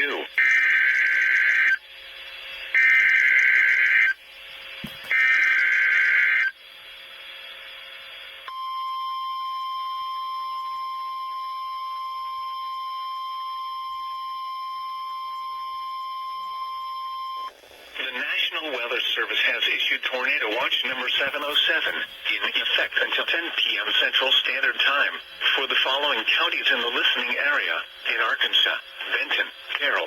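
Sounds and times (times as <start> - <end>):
steady warning alarm tone: 0.0 - 6.6, 18.1 - 30.0
harsh electronic data warble: 18.1 - 30.0.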